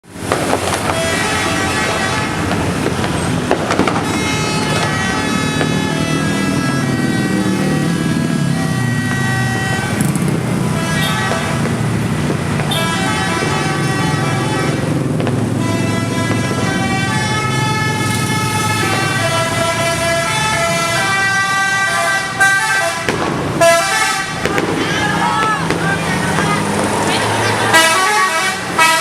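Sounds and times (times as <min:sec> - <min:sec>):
bus engine rumble: 0:00.0 - 0:29.0
sharp bangs: 0:00.2 - 0:29.0
musical air horn tunes: 0:27.7 - 0:29.0.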